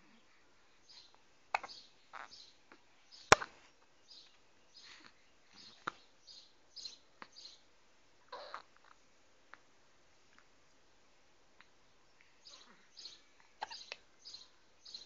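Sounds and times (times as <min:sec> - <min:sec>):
soft breathy sounds: 0:00.0 - 0:06.2, 0:07.0 - 0:15.0
baby hiccuping: 0:01.5 - 0:02.4, 0:08.3 - 0:08.7, 0:13.6 - 0:14.0.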